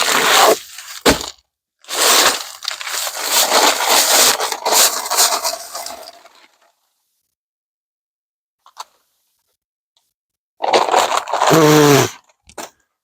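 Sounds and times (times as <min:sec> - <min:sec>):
dry concrete mix pouring: 0:00.0 - 0:01.2, 0:01.9 - 0:06.6.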